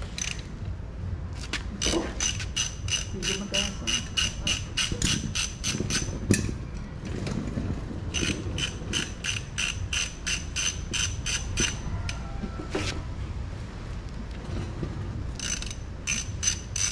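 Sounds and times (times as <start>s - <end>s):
ratchet wrench clicking: 0.1s - 0.5s, 1.8s - 6.1s, 8.1s - 12.2s, 15.4s - 16.9s.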